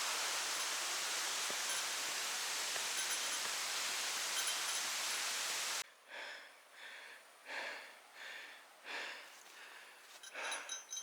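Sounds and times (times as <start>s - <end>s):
heavy labored breathing: 6.1s - 10.9s.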